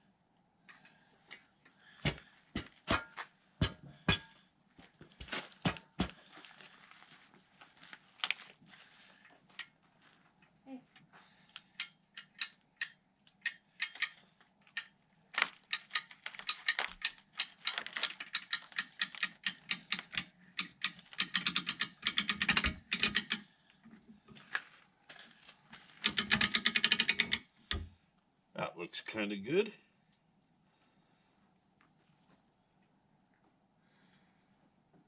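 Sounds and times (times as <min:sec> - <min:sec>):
hand ratchet clicking: 0:11.7 - 0:14.2, 0:14.8 - 0:23.5, 0:26.0 - 0:27.8.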